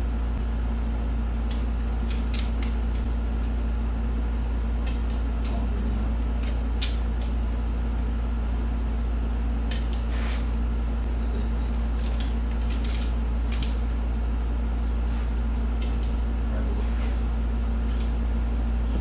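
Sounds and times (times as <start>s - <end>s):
low shop hum: 0.0s - 19.0s
metallic clicks of hand tools: 4.8s - 5.6s, 12.0s - 13.8s, 15.8s - 16.2s, 18.0s - 18.2s.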